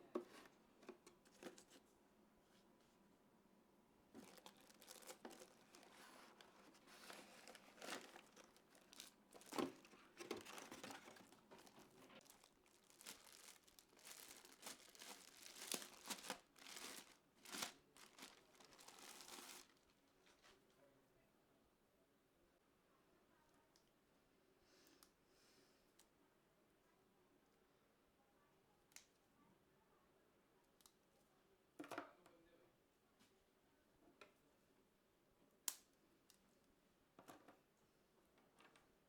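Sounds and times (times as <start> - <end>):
plastic packaging crinkling: 4.1 - 20.0.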